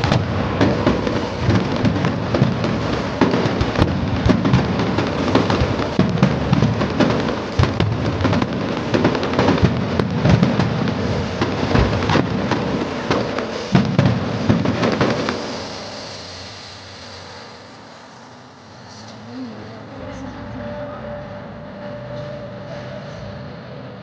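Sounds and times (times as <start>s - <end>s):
fireworks bangs and booms: 0.0s - 16.3s
fireworks crackling: 0.0s - 23.0s.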